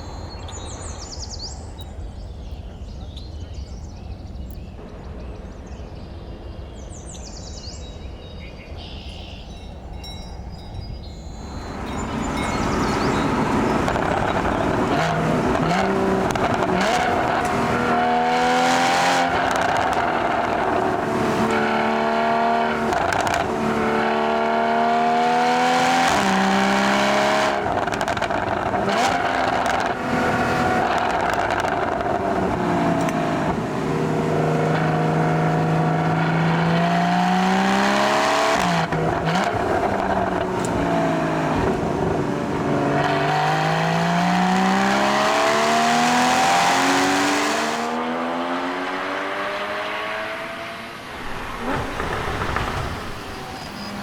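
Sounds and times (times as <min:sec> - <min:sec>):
car engine accelerating through gears: 0:11.6 - 0:54.0.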